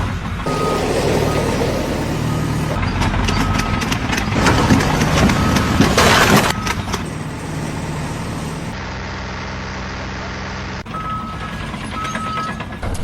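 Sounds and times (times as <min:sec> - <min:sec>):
engine running steadily: 0:00.0 - 0:13.0
burst of rushing noise: 0:00.5 - 0:02.8
knocks and clatter: 0:00.5 - 0:08.8.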